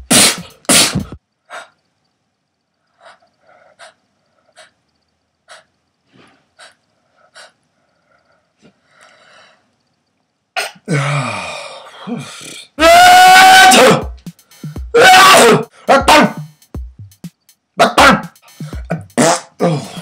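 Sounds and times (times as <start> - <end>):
man sneezing loudly: 0.1 - 1.1, 12.1 - 14.1, 15.0 - 16.5, 17.8 - 20.0
faint breathy bursts: 2.7 - 9.9.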